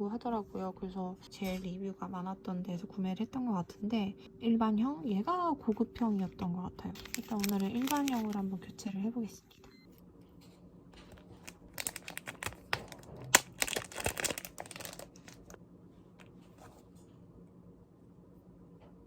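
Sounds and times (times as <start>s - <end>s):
plastic packaging crinkling: 6.9s - 8.5s, 11.0s - 15.6s.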